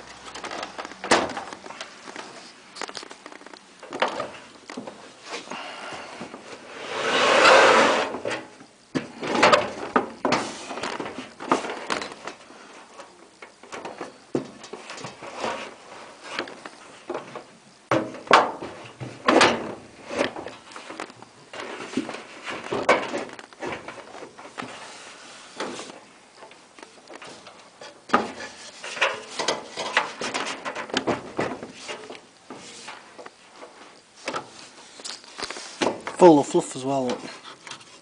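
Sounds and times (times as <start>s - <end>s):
rasping metal scrape: 6.6s - 8.2s.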